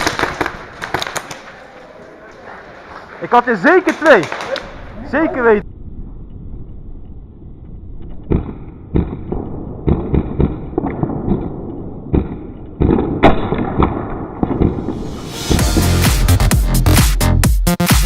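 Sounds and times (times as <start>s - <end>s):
electronic dance music: 15.3s - 18.0s.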